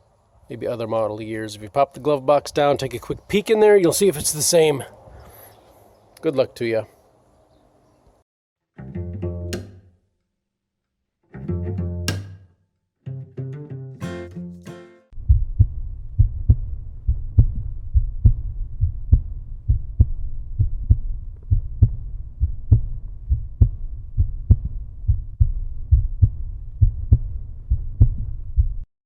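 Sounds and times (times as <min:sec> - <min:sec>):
thudding heartbeat-like pulse: 0:15.2 - 0:28.9.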